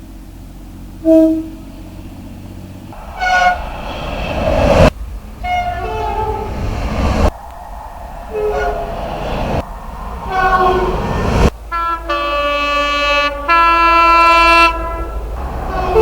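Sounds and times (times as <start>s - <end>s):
passing train rumble: 0.0s - 16.0s
two-tone train horn blasts: 1.0s - 2.0s, 2.9s - 3.9s, 5.4s - 6.6s, 11.6s - 16.0s.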